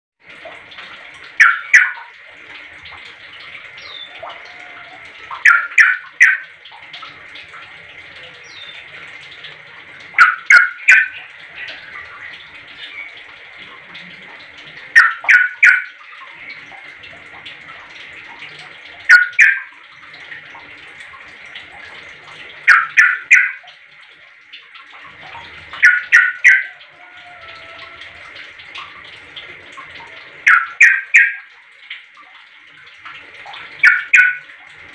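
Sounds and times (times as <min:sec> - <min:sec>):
bird calling: 0:03.8 - 0:06.4, 0:25.8 - 0:28.1.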